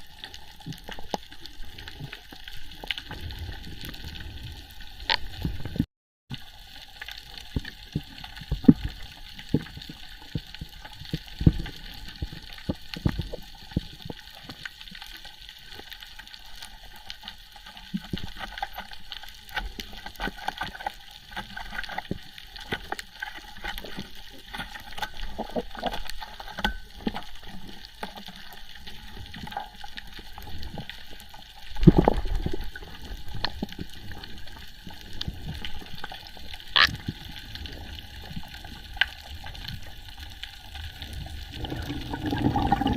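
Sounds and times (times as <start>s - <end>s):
water rushing and gurgling: 0.0s - 5.8s, 22.6s - 42.9s
clicks and crackles: 0.0s - 42.9s.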